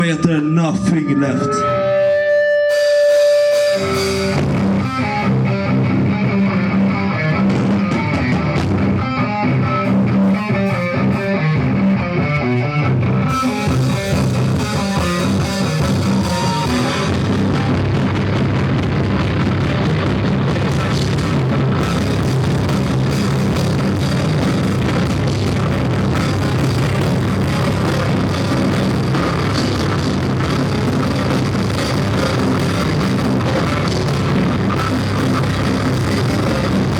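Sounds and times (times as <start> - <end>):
electric guitar riff: 0.0 - 36.9
rock band playing live: 0.0 - 36.9
drums with cymbals: 2.7 - 5.6, 13.3 - 36.9.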